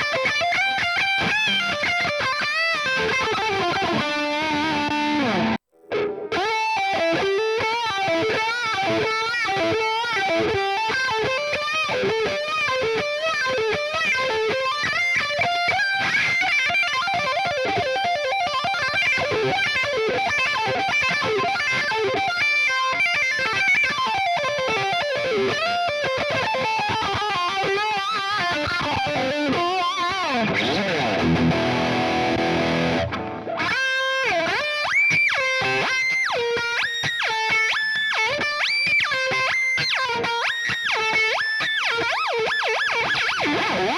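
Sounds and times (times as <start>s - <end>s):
electric guitar lead lines: 0.0s - 43.9s.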